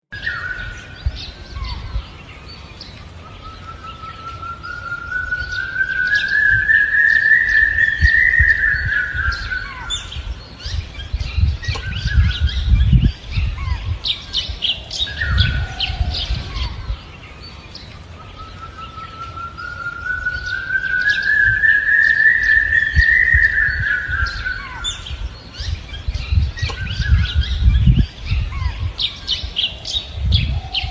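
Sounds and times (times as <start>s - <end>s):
birds chirping and calling: 0.1s - 30.9s.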